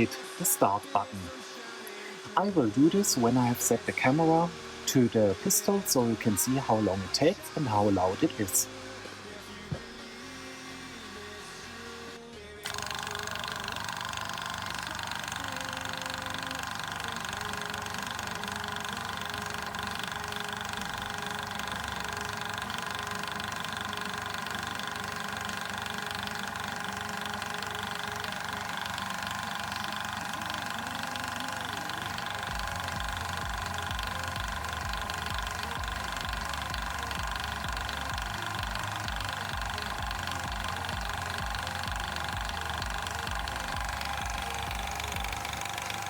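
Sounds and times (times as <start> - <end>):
compressor whining: 0.0 - 46.0.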